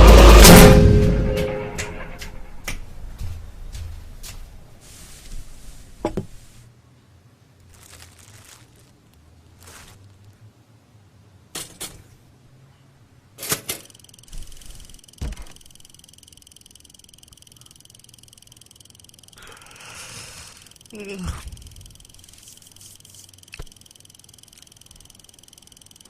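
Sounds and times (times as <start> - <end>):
high-pitched ringing tone: 13.8 - 26.0.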